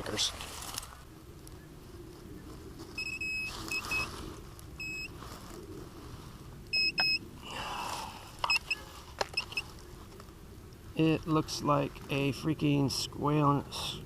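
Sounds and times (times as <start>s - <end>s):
rustle of brush or digging: 0.0s - 6.7s, 7.5s - 12.9s
metal detector beeps: 3.0s - 4.1s, 4.8s - 5.2s, 6.7s - 7.2s, 8.4s - 9.7s.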